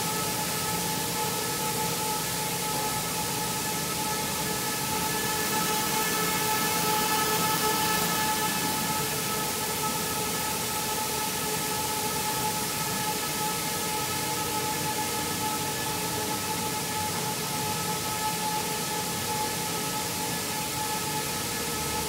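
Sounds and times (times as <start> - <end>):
high whine: 2.2 - 11.4.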